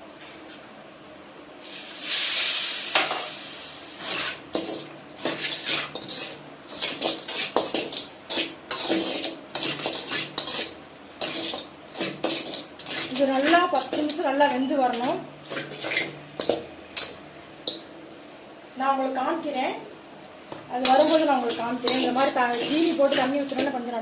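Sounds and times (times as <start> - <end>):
water hissing in hot pan: 1.6 - 17.8, 20.8 - 23.8
spatula scraping a pan: 4.0 - 17.9, 20.8 - 23.8.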